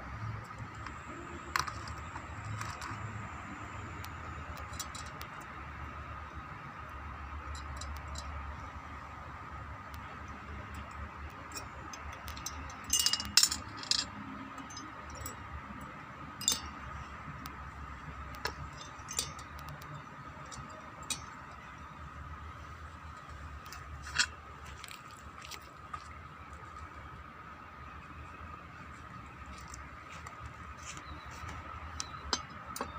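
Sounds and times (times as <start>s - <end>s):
metallic clinks of tools: 11.5s - 15.5s, 16.4s - 17.1s, 18.4s - 21.8s.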